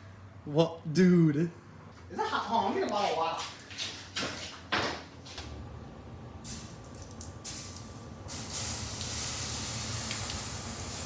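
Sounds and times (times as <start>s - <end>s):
water hissing on hot metal: 6.5s - 11.0s.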